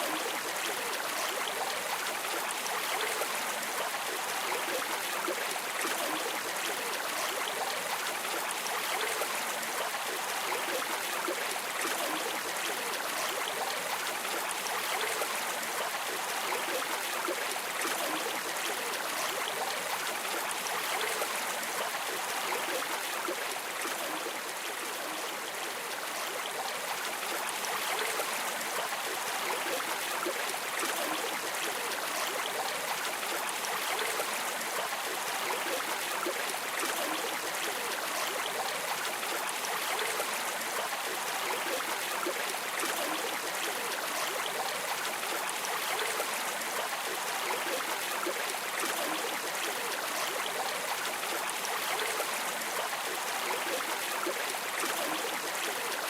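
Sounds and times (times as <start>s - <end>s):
stream water running over rocks: 0.0s - 56.0s.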